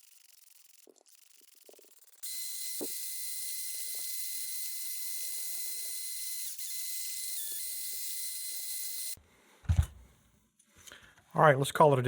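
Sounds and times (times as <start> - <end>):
tool high whine: 0.0 - 9.2.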